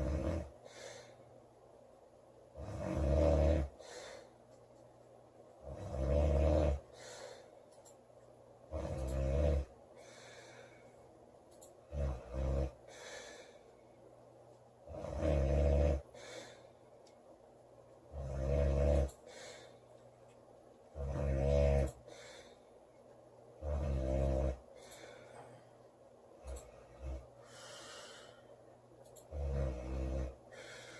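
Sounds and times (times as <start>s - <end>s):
girl snoring loudly: 0.0s - 0.5s, 2.6s - 3.8s, 5.7s - 6.8s, 8.7s - 9.7s, 14.9s - 16.1s, 18.2s - 19.1s, 21.0s - 22.0s, 23.6s - 24.6s, 29.3s - 30.4s
soft breath out: 26.6s - 28.6s.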